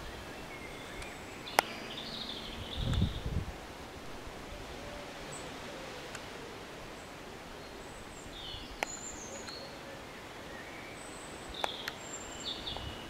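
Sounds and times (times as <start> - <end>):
small birds chirping: 0.0 - 3.4, 6.9 - 13.0
steady background hiss: 0.0 - 13.0.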